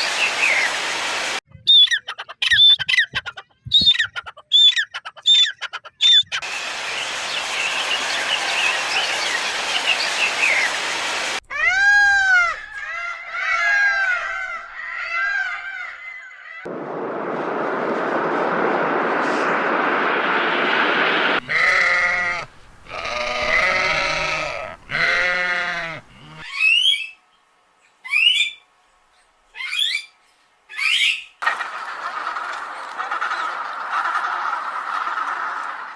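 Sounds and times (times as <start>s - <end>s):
rushing noise: 6.4s - 11.4s, 16.7s - 26.4s
short rising calls: 16.7s - 26.4s
wavering bleats: 21.4s - 26.5s.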